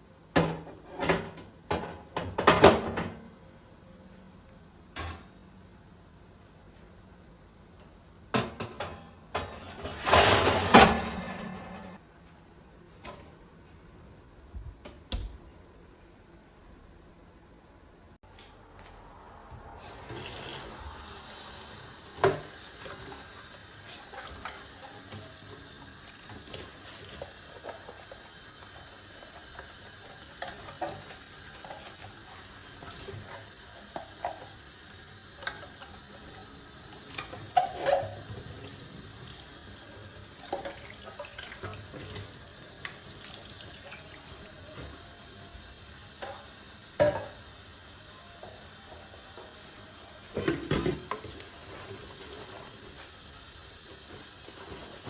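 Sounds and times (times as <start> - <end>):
tap water running into sink: 20.0 - 36.0.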